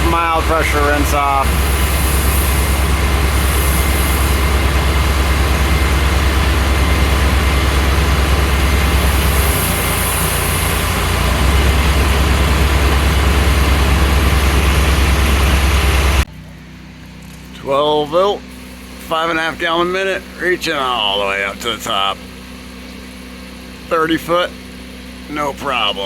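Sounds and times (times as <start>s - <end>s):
pressure washer engine humming: 0.0s - 26.0s
pressure washer spray hissing: 0.6s - 6.2s, 8.8s - 11.8s.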